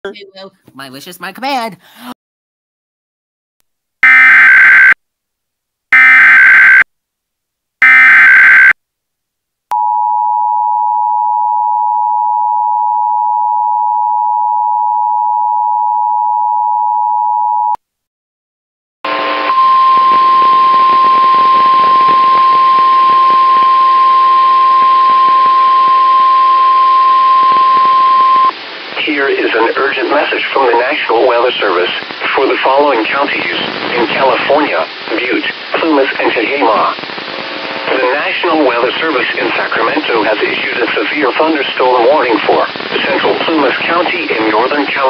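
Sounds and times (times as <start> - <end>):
steady warning alarm tone: 19.2 - 28.5
radio hiss: 27.4 - 45.0.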